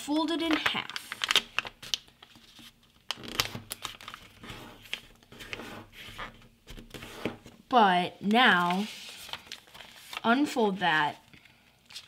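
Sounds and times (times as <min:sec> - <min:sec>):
paper being folded: 0:00.3 - 0:07.3, 0:08.4 - 0:10.6.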